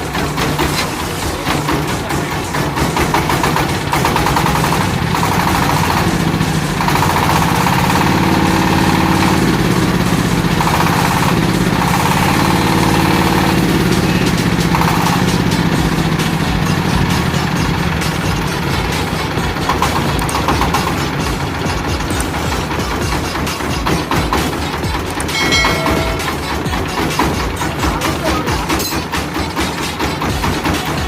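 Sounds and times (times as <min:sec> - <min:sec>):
diesel engine running: 0:00.0 - 0:31.0
high machine whine: 0:04.6 - 0:29.4.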